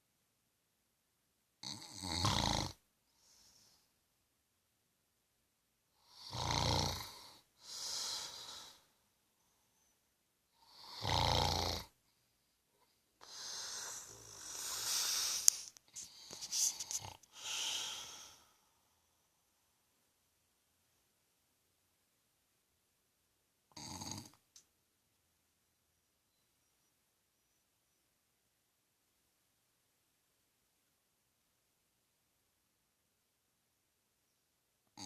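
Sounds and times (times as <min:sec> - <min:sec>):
man snoring: 0:01.6 - 0:02.8, 0:06.0 - 0:08.9, 0:10.6 - 0:12.0, 0:13.2 - 0:15.5, 0:16.9 - 0:18.5, 0:23.7 - 0:24.4.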